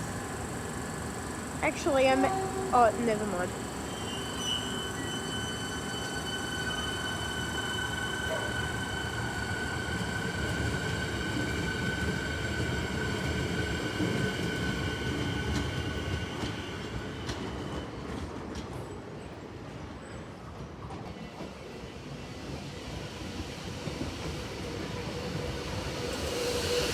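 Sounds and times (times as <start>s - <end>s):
train wheels rumbling on rails: 0.0s - 26.9s.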